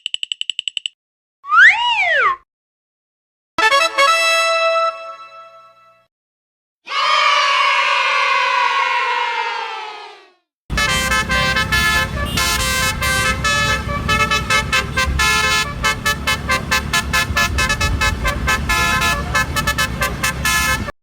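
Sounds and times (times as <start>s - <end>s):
low engine rumble: 10.7s - 21.0s
vehicle horns tooting: 10.7s - 21.0s.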